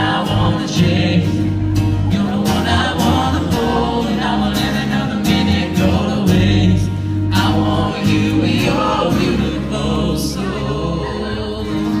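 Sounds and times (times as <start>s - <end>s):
bass guitar notes: 0.0s - 12.0s
guitar: 0.0s - 12.0s
person singing: 0.0s - 12.0s.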